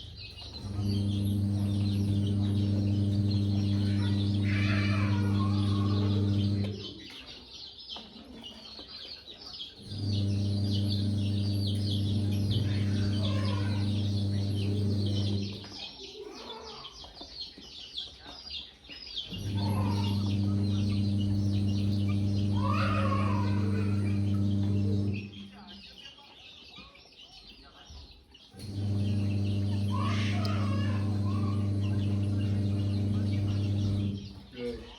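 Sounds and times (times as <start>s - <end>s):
steady electric hum: 0.0s - 7.1s, 9.8s - 15.8s, 19.3s - 25.8s, 28.5s - 34.9s
chicks peeping: 0.0s - 34.9s.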